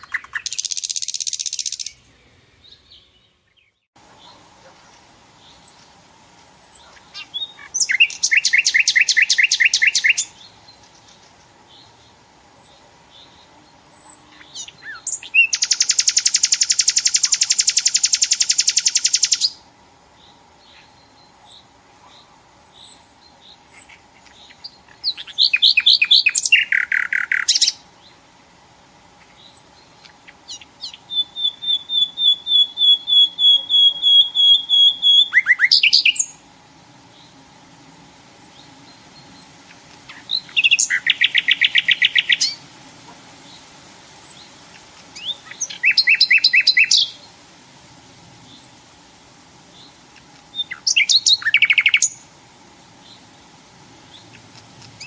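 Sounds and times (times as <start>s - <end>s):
nightingale singing: 0.0s - 28.4s, 29.1s - 47.5s, 48.3s - 55.0s
faint high chirps: 29.2s - 36.4s.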